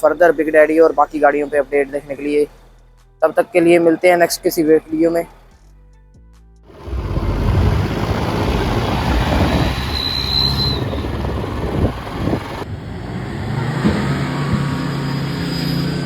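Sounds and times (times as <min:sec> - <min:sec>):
exhaust whistle: 0:06.7 - 0:12.6
engine and road noise: 0:06.7 - 0:16.0.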